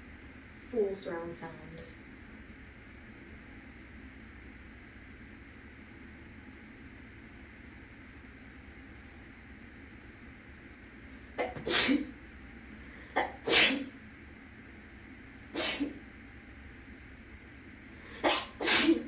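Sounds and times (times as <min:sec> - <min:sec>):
fan humming: 0:00.0 - 0:19.0
person sneezing: 0:11.4 - 0:12.1, 0:13.1 - 0:13.9, 0:15.6 - 0:16.0, 0:18.1 - 0:19.0.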